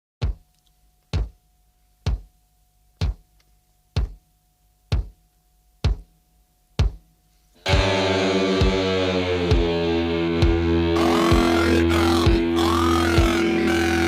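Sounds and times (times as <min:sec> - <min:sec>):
bass drum thumps: 0:00.2 - 0:00.5, 0:01.1 - 0:01.4, 0:02.0 - 0:02.4, 0:03.0 - 0:03.3, 0:04.0 - 0:04.2, 0:04.9 - 0:05.2, 0:05.8 - 0:06.2, 0:06.8 - 0:07.1, 0:07.7 - 0:12.5
heavy rock music with guitar: 0:07.6 - 0:14.0.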